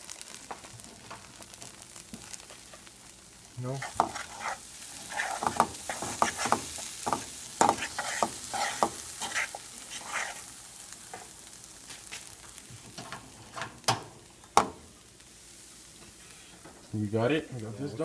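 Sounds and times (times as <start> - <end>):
food sizzling in a frying pan: 0.0 - 18.0
utensil scraping a pan: 3.7 - 10.5.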